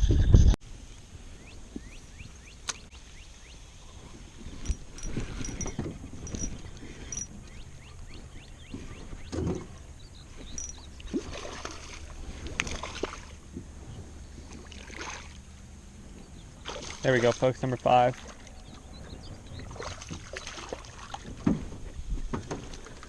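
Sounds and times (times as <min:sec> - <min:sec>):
fishing gear knocking and clicking: 0:04.6 - 0:07.3, 0:10.4 - 0:10.9.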